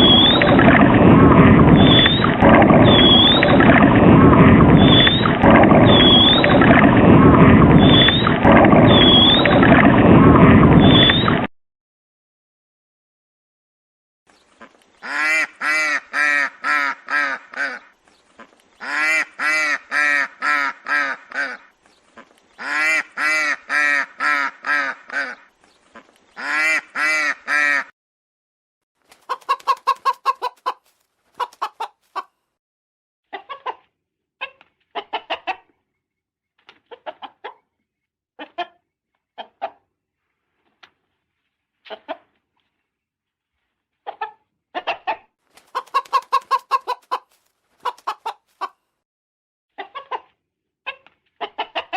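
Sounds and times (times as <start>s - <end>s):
rapid clicking calls: 29.1s - 32.3s, 45.6s - 48.7s.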